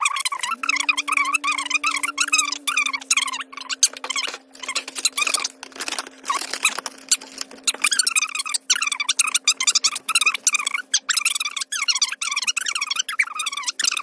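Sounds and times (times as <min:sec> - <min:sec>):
steady low hum: 0:00.0 - 0:10.6
rapid clicks and rustles: 0:03.6 - 0:10.2.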